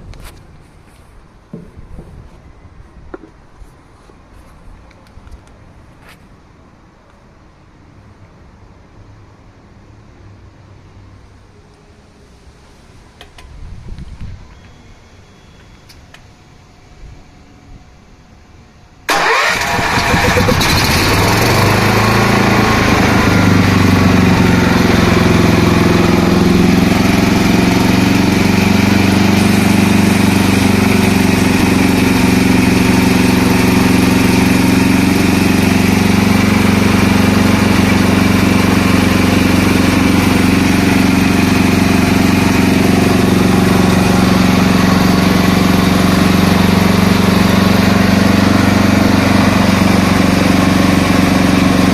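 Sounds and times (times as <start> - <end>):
motor starting and running: 19.1 - 47.9.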